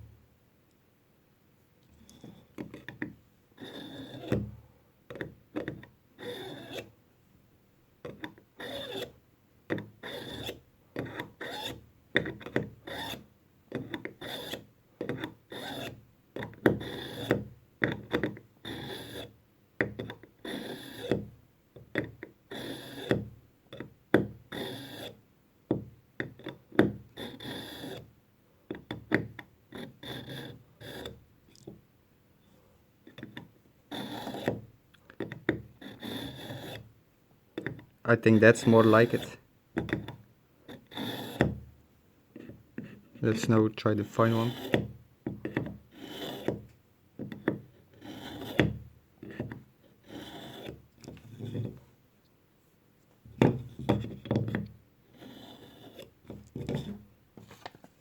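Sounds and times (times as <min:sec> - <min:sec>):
knife scraping through sharpener: 0:03.6 - 0:04.3, 0:06.2 - 0:06.9, 0:08.6 - 0:09.1, 0:10.0 - 0:10.6, 0:24.5 - 0:25.2, 0:33.9 - 0:34.5, 0:40.9 - 0:41.4, 0:44.3 - 0:44.8, 0:45.9 - 0:46.5, 0:47.9 - 0:48.6, 0:50.0 - 0:51.6, 0:55.1 - 0:56.1.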